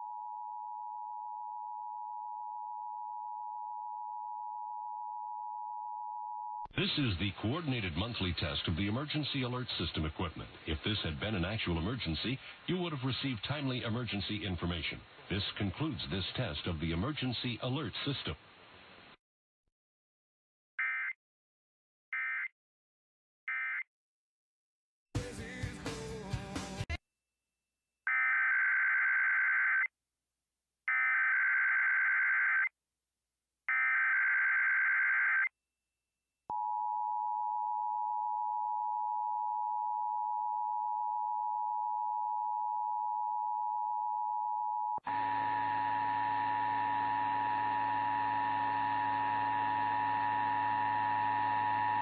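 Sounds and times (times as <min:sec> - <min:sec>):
steady two-tone attention signal: 0:45.1 - 0:52.0.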